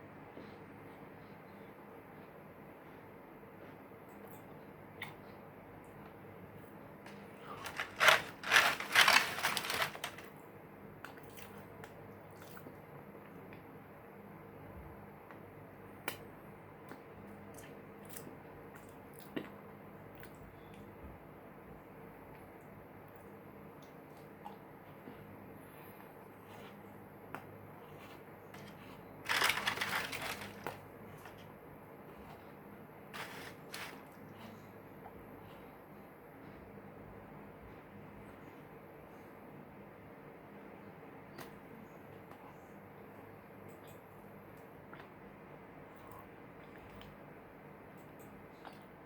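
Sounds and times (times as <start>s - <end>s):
crunching butter cookies: 7.1s - 10.4s, 26.3s - 32.6s, 33.2s - 34.7s.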